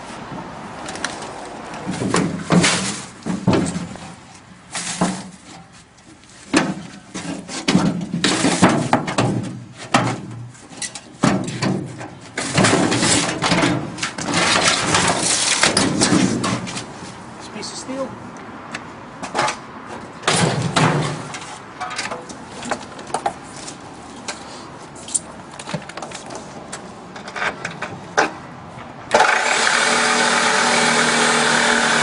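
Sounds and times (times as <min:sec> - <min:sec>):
scrap metal parts clattering: 0:12.4 - 0:16.8.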